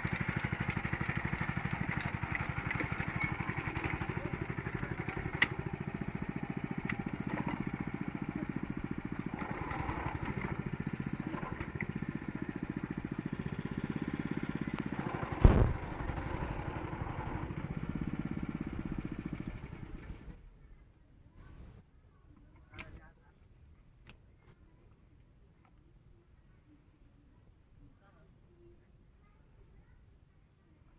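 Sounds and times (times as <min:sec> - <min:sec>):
small engine chugging: 0:00.0 - 0:20.5
loud thump: 0:15.4 - 0:16.2.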